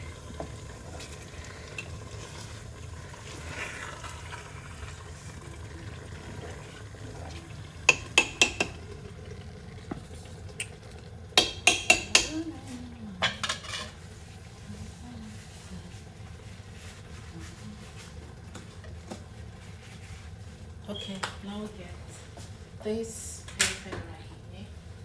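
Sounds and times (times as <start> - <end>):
spoon clinking in a pot: 7.9 - 8.8, 11.4 - 12.4, 13.2 - 14.0.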